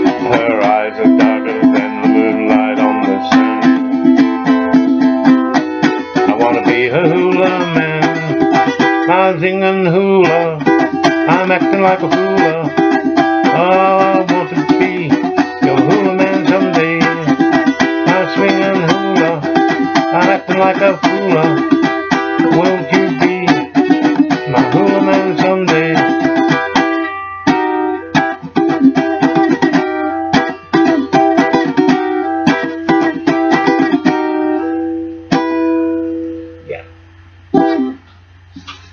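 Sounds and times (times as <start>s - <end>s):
ukulele strummed and picked: 0.0s - 38.9s.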